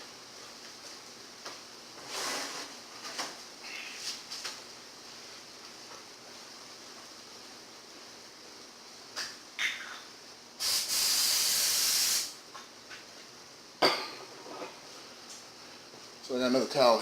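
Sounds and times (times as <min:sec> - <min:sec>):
aerosol spray hiss: 0:10.6 - 0:12.4.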